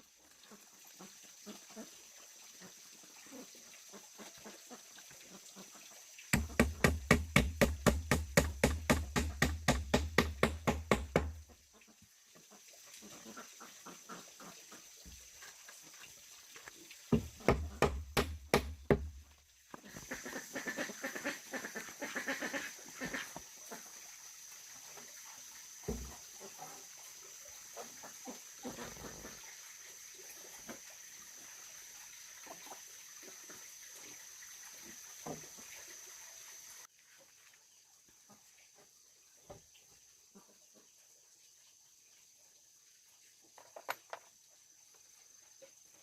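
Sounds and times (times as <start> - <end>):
rapid heavy knocking: 6.4 - 11.4.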